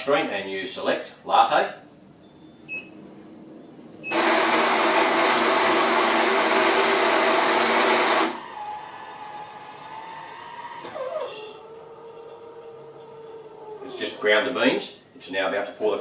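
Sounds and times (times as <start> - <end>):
coffee grinder grinding beans: 4.1 - 8.4.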